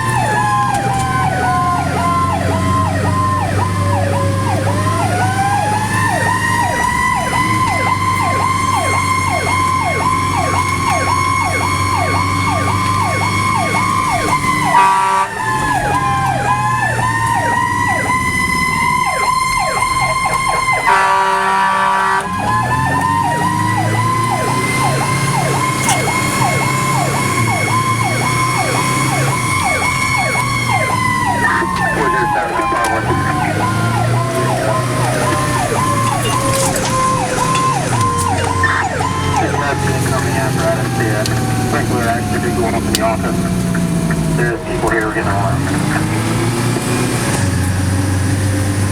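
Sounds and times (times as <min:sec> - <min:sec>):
electronic siren yelping: 0:00.0 - 0:48.9
fire engine drone: 0:00.0 - 0:48.9
wailing siren: 0:00.0 - 0:48.9
air horn: 0:14.5 - 0:15.9, 0:20.8 - 0:22.4.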